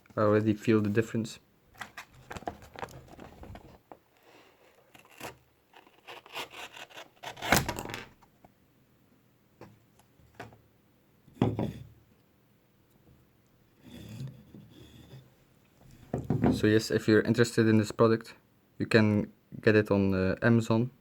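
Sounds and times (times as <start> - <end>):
rubbing and scraping handling: 1.8 - 8.3.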